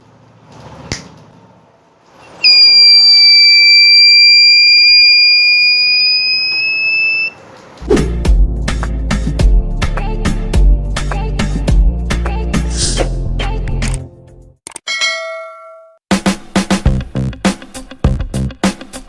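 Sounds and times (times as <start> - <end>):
alarm buzzer high-pitched tone: 2.4 - 7.4
music with a beat: 16.1 - 19.0.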